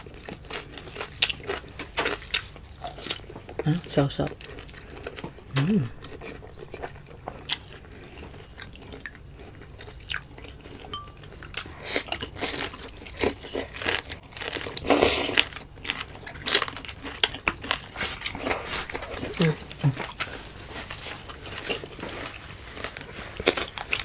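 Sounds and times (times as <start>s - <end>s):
person biting and chewing food: 4.4s - 11.1s
small mouth clicks: 5.5s - 6.2s.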